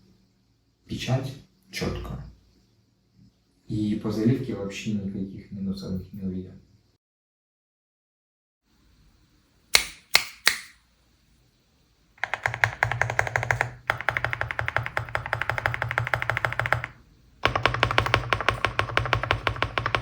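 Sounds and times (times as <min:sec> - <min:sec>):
mechanical keyboard typing: 0:12.2 - 0:20.0.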